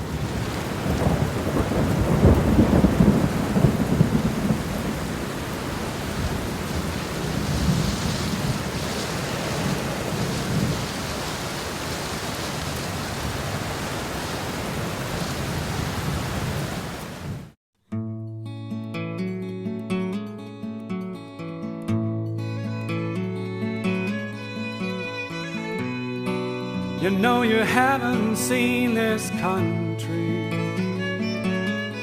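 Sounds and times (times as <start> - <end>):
thunder rumble: 0.0 - 17.5
steady rain falling: 0.0 - 17.6.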